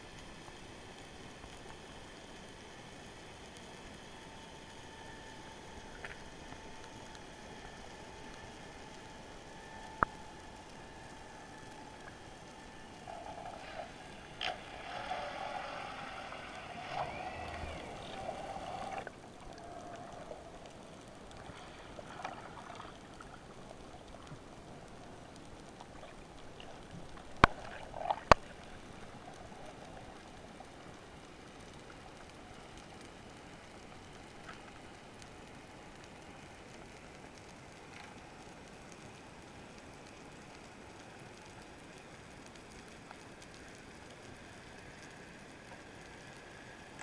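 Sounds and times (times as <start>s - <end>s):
underwater hiss: 13.0s - 19.0s.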